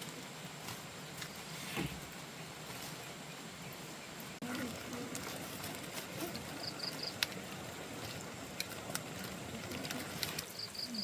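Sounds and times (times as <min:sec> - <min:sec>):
steady rain: 0:00.0 - 0:11.0.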